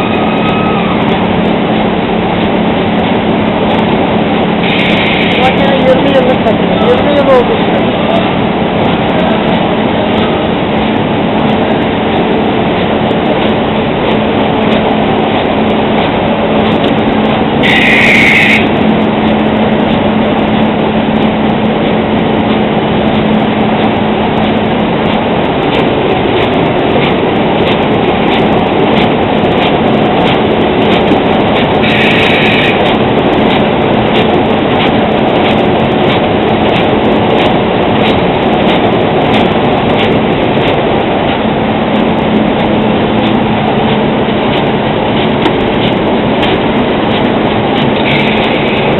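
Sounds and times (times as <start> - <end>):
constant machine hum: 0.0 - 48.9
machine mechanical clatter: 19.2 - 48.9.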